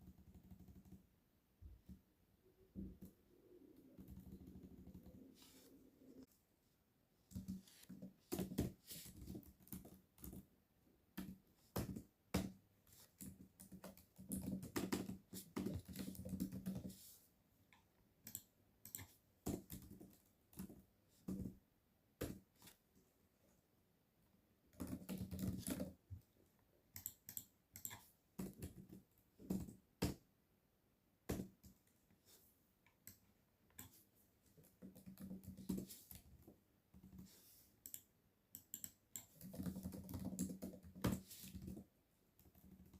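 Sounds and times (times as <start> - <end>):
typing on computer keyboard: 13.2 - 17.0, 18.2 - 21.5, 24.7 - 26.0, 27.0 - 29.8, 34.7 - 36.0, 37.8 - 41.8.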